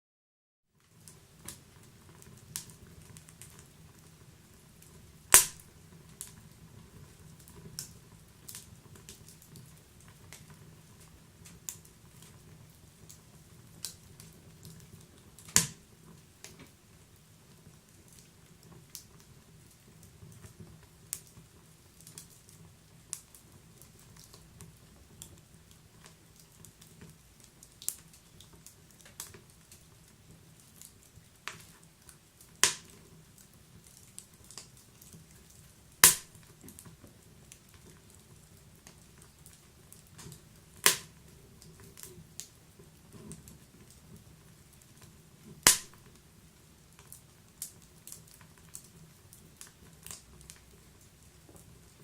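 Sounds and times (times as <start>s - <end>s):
wood fire crackling: 0.8s - 52.0s
fire hiss: 5.2s - 5.8s, 36.0s - 36.5s, 45.6s - 46.0s
logs popping: 5.3s - 5.7s, 15.4s - 15.8s, 32.6s - 33.0s, 36.0s - 36.5s, 40.2s - 41.2s, 45.6s - 46.1s.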